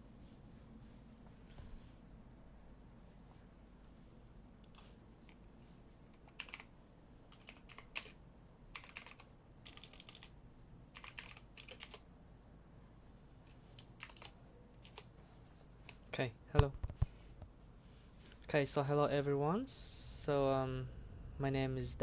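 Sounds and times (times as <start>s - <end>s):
computer keyboard typing: 2.1s - 12.8s, 13.5s - 15.2s.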